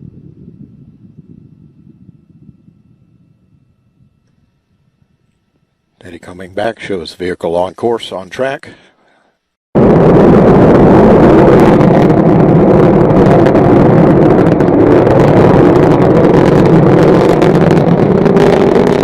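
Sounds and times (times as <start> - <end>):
rocket engines roaring: 9.8 - 19.0.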